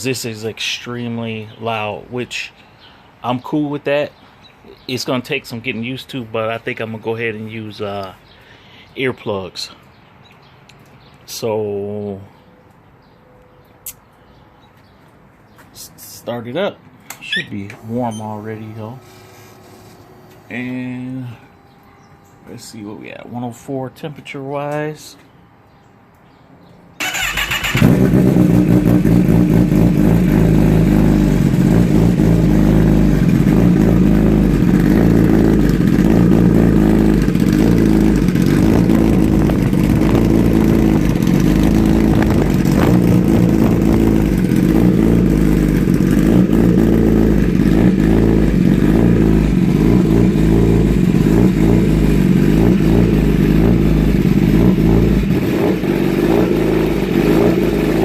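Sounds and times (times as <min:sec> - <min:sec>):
loud motorcycle engine running: 0:27.1 - 0:58.0.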